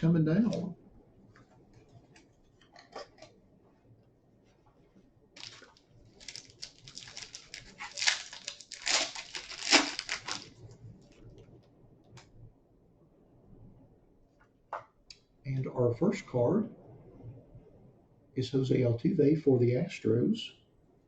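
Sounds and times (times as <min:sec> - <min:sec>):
packaging crinkling and tearing: 0:05.4 - 0:10.6.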